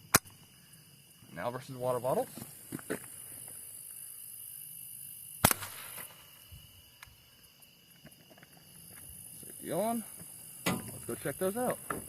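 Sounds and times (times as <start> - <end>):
gunshot echo: 5.4 - 6.2
rifle shot: 5.4 - 6.2.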